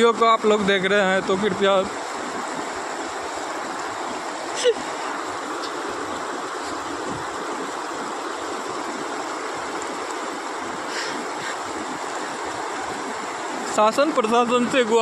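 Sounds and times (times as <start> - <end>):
river floodwater rushing: 0.0 - 15.0.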